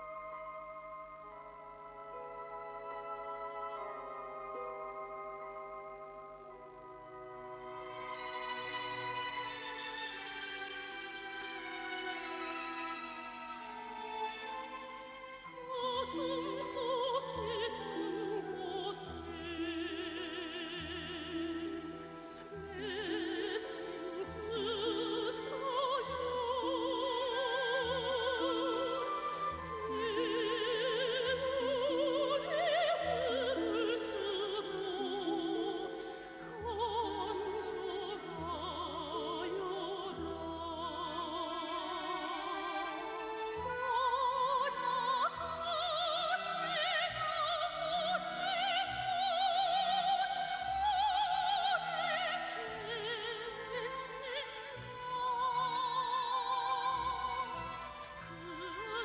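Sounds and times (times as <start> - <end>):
operatic singing with vibrato: 0.0 - 59.0
orchestral strings and bass: 0.0 - 59.0.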